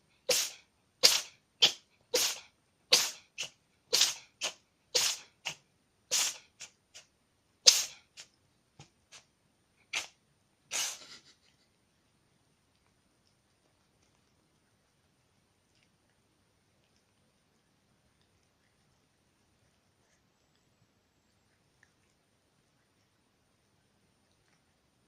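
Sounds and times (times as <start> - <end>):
cat sneezing: 0.2 - 8.3, 9.8 - 11.5.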